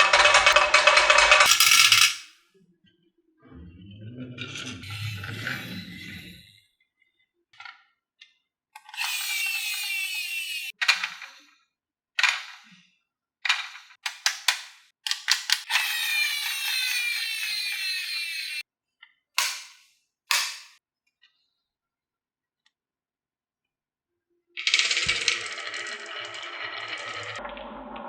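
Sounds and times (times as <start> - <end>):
marble rolling with falling whir: 0.0 - 2.2, 24.6 - 28.0
marbles clacking on wooden track: 0.0 - 2.3, 24.6 - 27.0.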